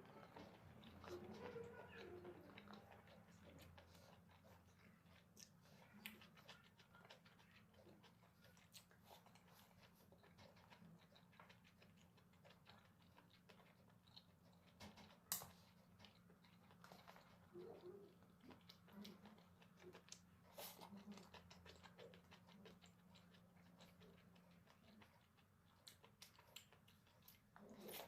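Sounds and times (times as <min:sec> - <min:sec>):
chewing mouth clicks: 0:00.0 - 0:28.0
faint low hum: 0:00.0 - 0:28.0.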